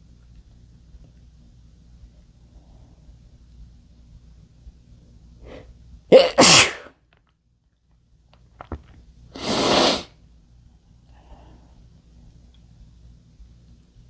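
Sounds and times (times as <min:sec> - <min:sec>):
man sneezing: 0:06.1 - 0:07.0.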